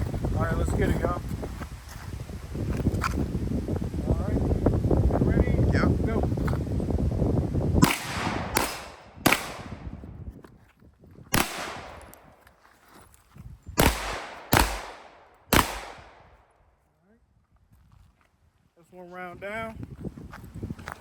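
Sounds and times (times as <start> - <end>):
pistol shots with ringing tail: 7.8 - 10.0, 11.4 - 12.4, 13.8 - 16.4.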